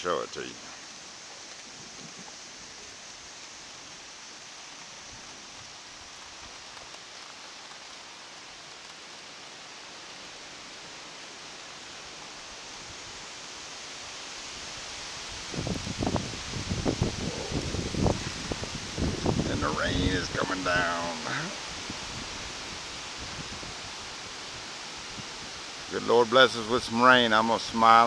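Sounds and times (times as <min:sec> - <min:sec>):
steady rain falling: 0:00.0 - 0:28.0.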